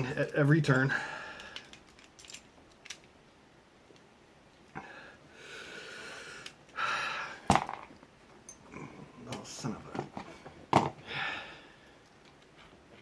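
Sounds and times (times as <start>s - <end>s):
person breathing out heavily: 4.8s - 7.5s, 11.0s - 12.0s.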